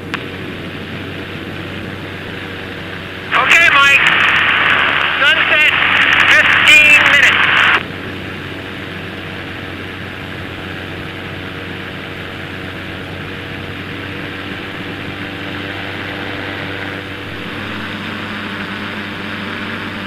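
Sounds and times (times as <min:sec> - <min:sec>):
light airplane engine running: 0:00.0 - 0:20.0.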